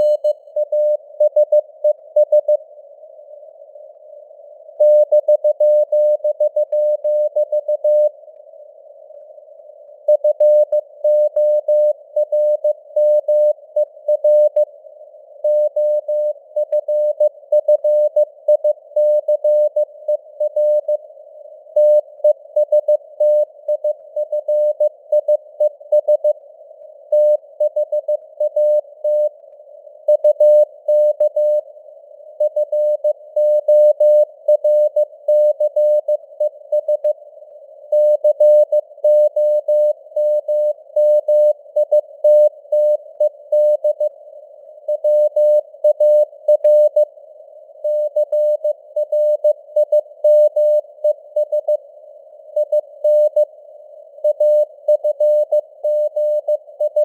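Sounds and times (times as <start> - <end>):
morse code tone: 0.0 - 0.2.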